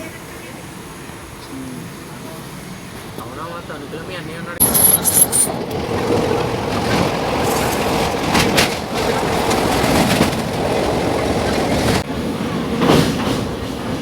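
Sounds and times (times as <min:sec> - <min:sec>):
train rumbling on track: 0:00.0 - 0:14.0
train wheels clattering: 0:04.6 - 0:14.0.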